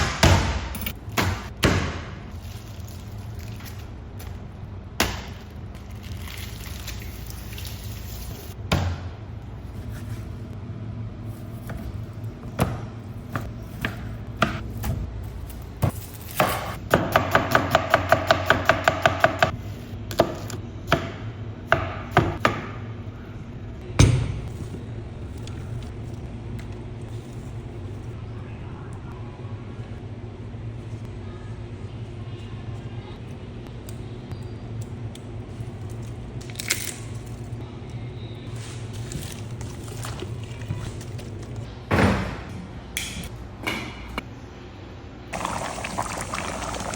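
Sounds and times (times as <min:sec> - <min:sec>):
steady low hum: 0:00.0 - 0:46.9.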